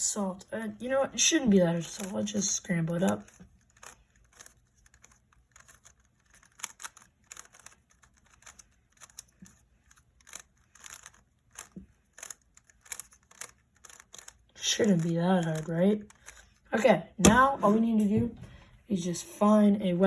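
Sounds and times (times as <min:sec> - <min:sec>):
puzzle cube plastic clicks: 0:01.7 - 0:17.5.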